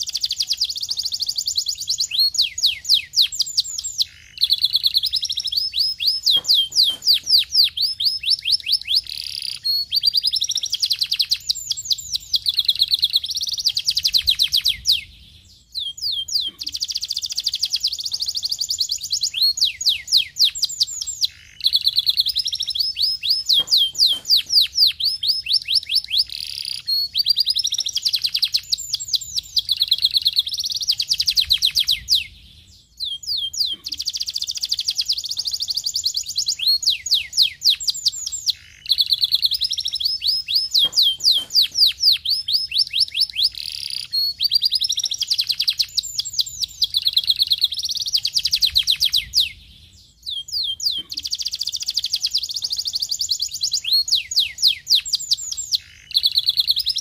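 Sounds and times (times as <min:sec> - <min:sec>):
canary singing trills: 0:00.0 - 0:57.0.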